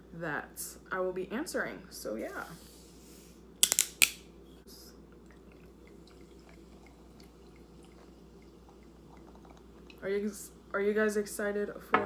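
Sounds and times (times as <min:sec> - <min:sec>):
small hard objects clicking together: 0:03.6 - 0:04.2.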